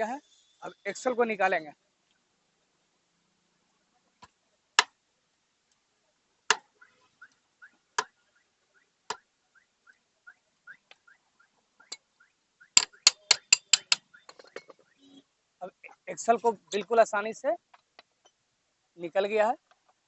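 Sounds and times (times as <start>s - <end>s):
sharp metal knocks: 12.8s - 14.8s.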